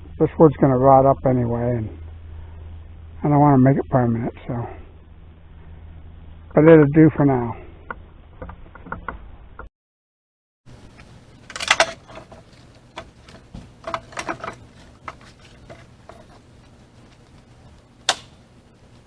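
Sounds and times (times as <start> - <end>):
firewood clunking when stacked: 11.5 - 16.4.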